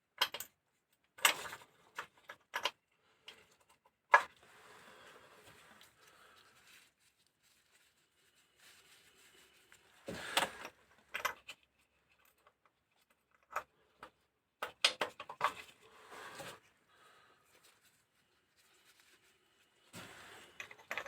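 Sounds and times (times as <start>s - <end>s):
metal parts and tools clattering: 20.6s - 21.0s.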